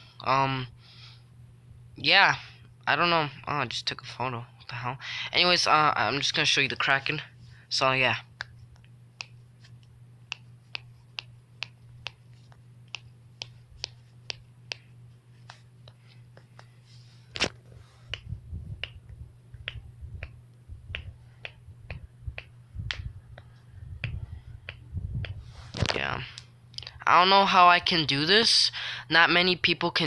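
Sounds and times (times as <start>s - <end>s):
knuckles cracking: 8.4s - 16.7s, 17.4s - 26.9s
low rumbling: 18.1s - 25.6s.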